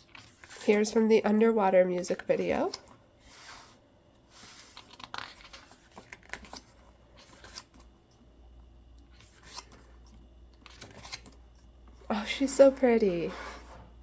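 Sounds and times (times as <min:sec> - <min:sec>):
paper pages rustling: 0:02.1 - 0:07.9, 0:09.1 - 0:11.4.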